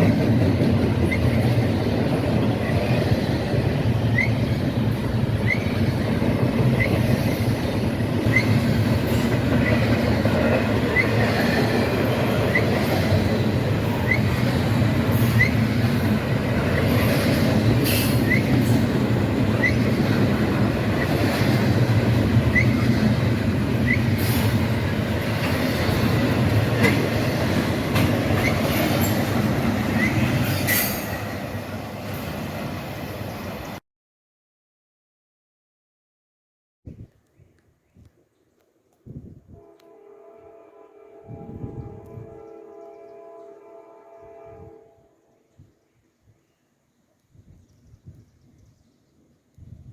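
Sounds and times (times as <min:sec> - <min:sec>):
train wheels rumbling on rails: 0:00.0 - 0:33.8.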